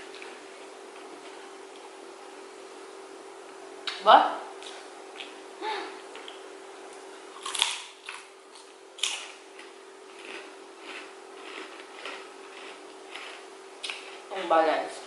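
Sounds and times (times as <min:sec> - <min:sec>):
steady low hum: 0:00.0 - 0:15.0
crunching snack food: 0:07.4 - 0:14.2.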